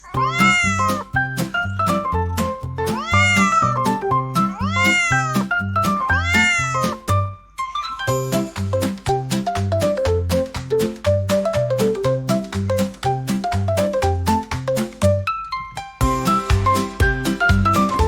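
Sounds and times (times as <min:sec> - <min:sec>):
cat meowing: 0:00.0 - 0:01.1, 0:02.8 - 0:07.0
bouncy music with bass beat: 0:00.2 - 0:07.3, 0:08.1 - 0:18.0.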